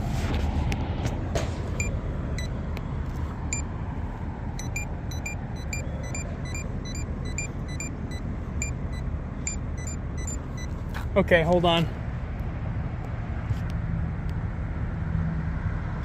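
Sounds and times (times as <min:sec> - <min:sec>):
traffic rumble: 0:00.0 - 0:16.0
pedestrian signal ticking: 0:01.8 - 0:02.6, 0:04.6 - 0:10.8.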